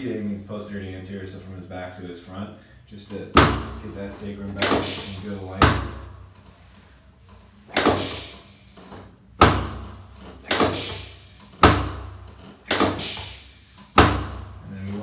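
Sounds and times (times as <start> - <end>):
drop table thudding: 3.4 - 6.4, 7.7 - 14.6.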